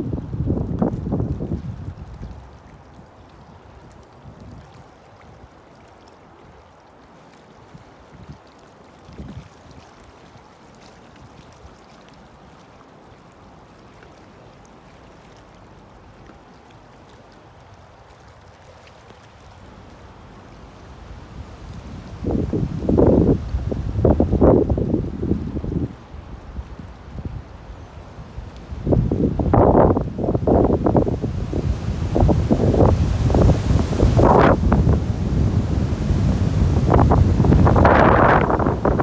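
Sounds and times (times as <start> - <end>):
strong wind: 0.0 - 2.5, 20.8 - 39.0
wind buffeting microphone: 0.0 - 2.6, 20.8 - 39.0
water noise: 12.2 - 39.0.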